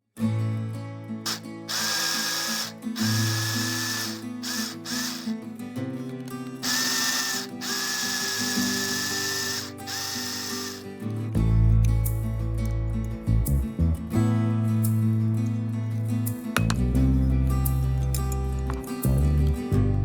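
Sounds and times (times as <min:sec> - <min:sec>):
small power tool whining: 0:01.3 - 0:05.4, 0:06.6 - 0:10.9.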